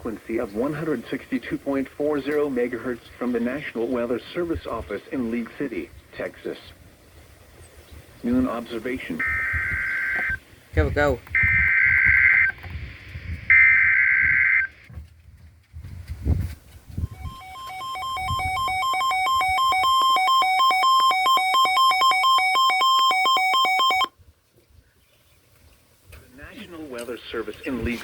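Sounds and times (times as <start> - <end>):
screeching digital data tones: 9.2 - 10.4, 11.4 - 12.5, 13.5 - 14.7, 17.1 - 24.1
alternating two-pitch alert tone: 17.1 - 24.1.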